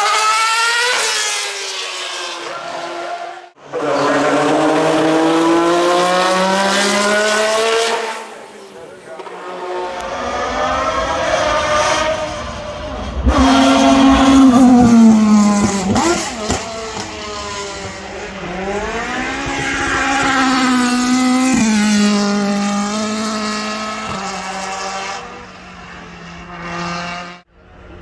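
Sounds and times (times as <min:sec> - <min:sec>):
car engine revving hard: 0:03.7 - 0:08.3, 0:09.8 - 0:27.4.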